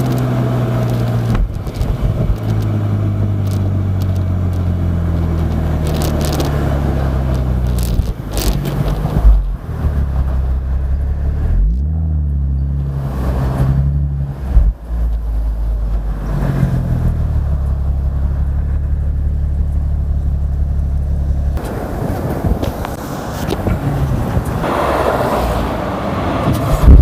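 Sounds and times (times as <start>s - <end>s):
car engine idling and revving: 0.0s - 27.0s
noisy rush: 14.3s - 27.0s.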